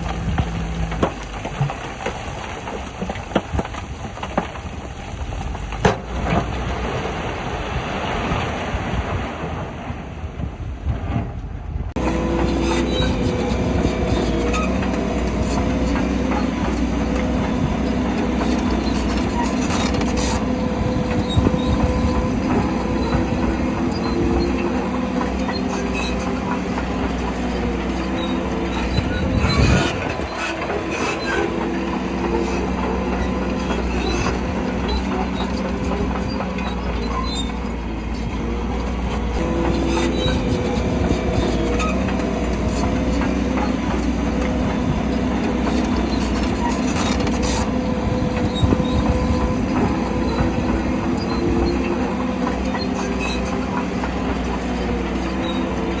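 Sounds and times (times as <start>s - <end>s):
bulldozer diesel engine running: 0.0s - 10.7s, 11.5s - 56.0s
steel tracks squealing and clanking: 12.0s - 56.0s.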